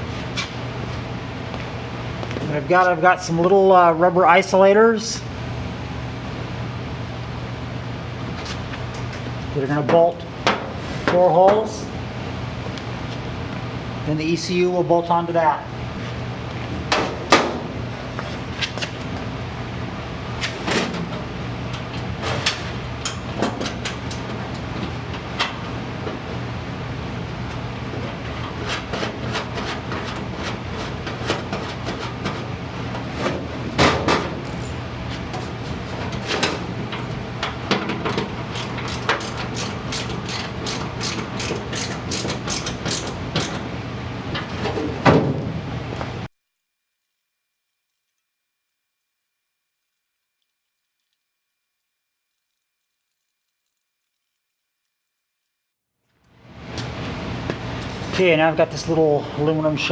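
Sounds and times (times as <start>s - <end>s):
steady low hum: 0.0s - 46.4s, 47.0s - 59.9s
fast run of clicks: 49.7s - 55.6s.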